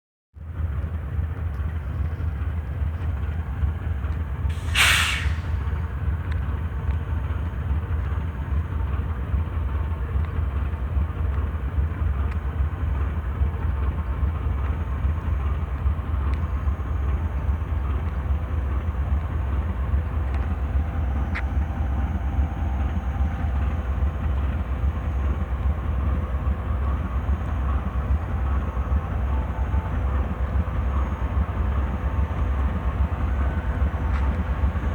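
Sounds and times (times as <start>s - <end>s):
diesel engine drone: 0.4s - 34.9s
sharp hiss of released air: 4.5s - 5.8s.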